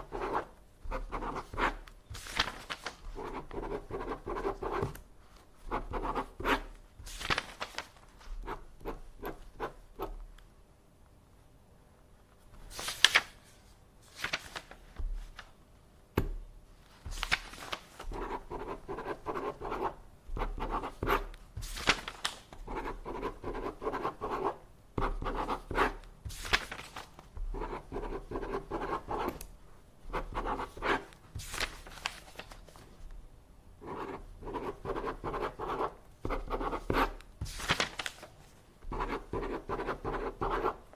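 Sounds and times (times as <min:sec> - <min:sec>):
paper scratching: 0:00.0 - 0:05.0, 0:17.1 - 0:24.6
paper sheets rustling and sliding: 0:01.4 - 0:03.2, 0:06.6 - 0:08.4, 0:12.6 - 0:15.5, 0:16.8 - 0:18.2, 0:21.6 - 0:22.6, 0:26.3 - 0:27.3, 0:30.7 - 0:33.1, 0:37.4 - 0:38.6.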